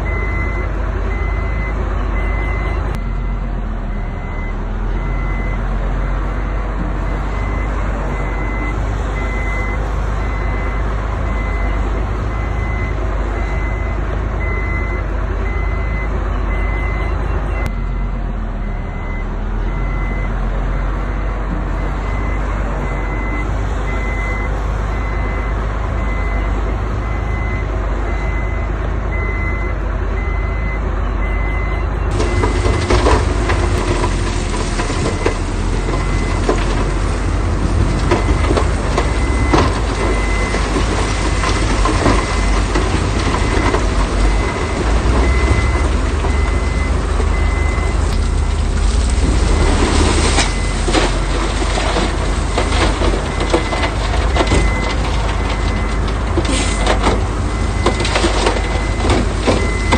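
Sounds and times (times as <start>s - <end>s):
diesel engine running: 0.0s - 59.9s
back-up alarm beeping: 27.2s - 36.4s, 43.4s - 48.4s, 57.6s - 59.9s.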